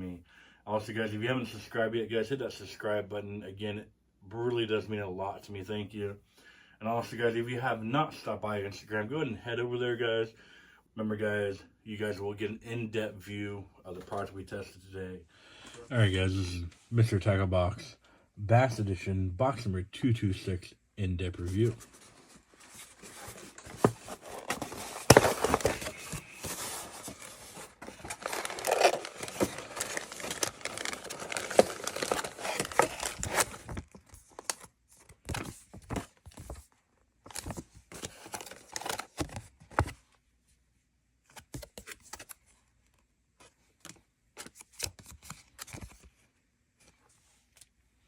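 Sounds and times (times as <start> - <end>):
plastic packaging torn and crinkled: 23.5 - 34.6.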